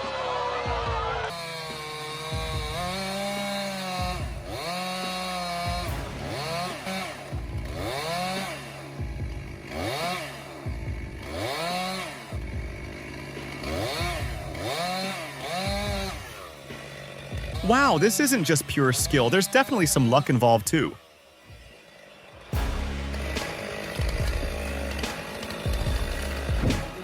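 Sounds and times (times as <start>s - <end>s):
chainsaw engine revving: 0.0s - 27.0s.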